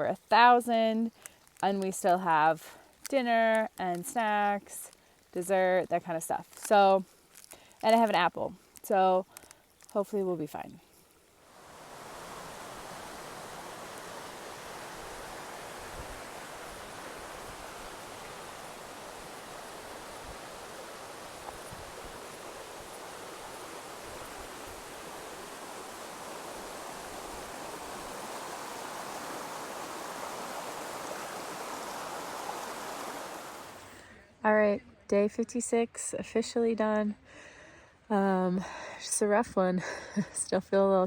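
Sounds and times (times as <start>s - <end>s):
running water rushing: 10.9s - 33.9s.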